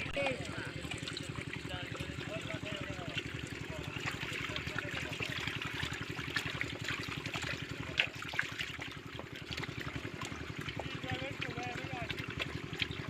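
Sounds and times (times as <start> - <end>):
small engine running: 0.0 - 13.0
water trickling and splashing: 0.0 - 13.0.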